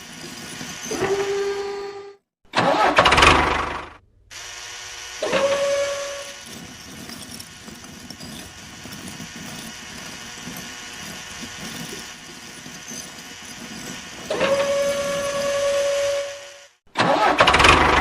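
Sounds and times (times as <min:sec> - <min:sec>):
small electric motor whining: 0:04.4 - 0:16.8
low uneven churning: 0:06.3 - 0:16.3.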